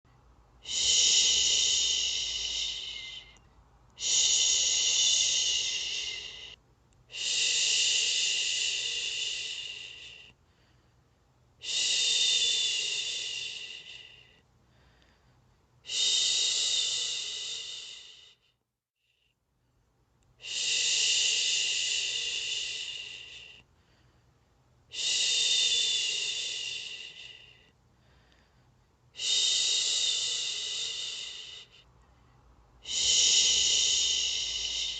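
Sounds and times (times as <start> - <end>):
person shushing: 0.6 - 3.4, 4.0 - 10.3, 32.8 - 34.9.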